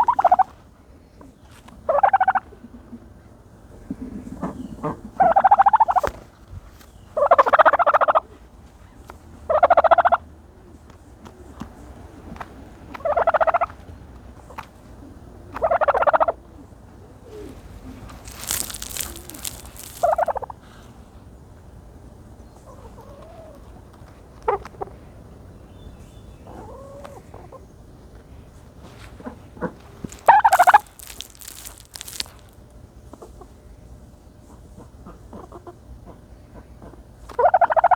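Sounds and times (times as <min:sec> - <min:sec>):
rustling scuffle: 0:17.5 - 0:20.4, 0:29.8 - 0:32.6
turkey rattling calls: 0:18.2 - 0:20.5, 0:30.0 - 0:32.5.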